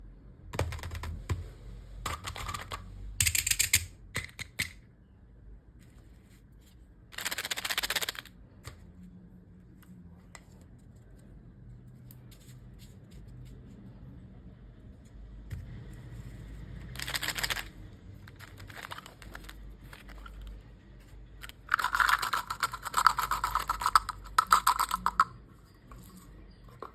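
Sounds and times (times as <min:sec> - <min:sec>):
plastic wrappers crinkling: 0:17.0 - 0:17.7.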